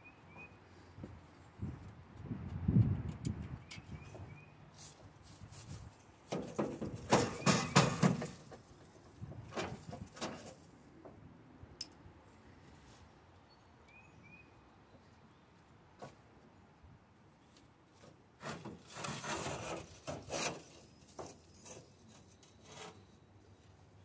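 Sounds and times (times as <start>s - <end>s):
tools and metal parts clanking: 6.3s - 8.6s.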